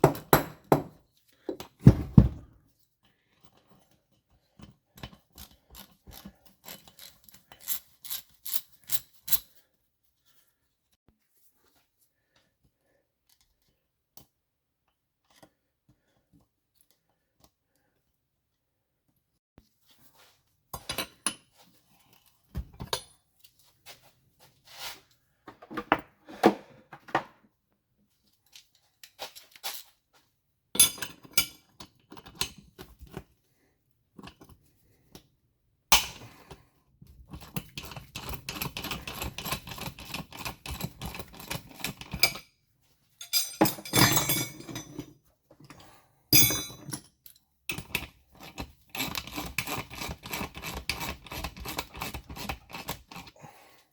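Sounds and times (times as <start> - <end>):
metal tools knocking and clinking: 30.8 - 32.6, 43.2 - 45.1, 46.4 - 48.0.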